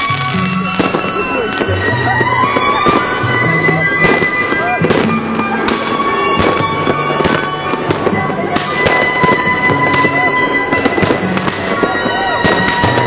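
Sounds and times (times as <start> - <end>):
fireworks bangs: 0.0 - 13.0
steady high tone: 0.0 - 13.0.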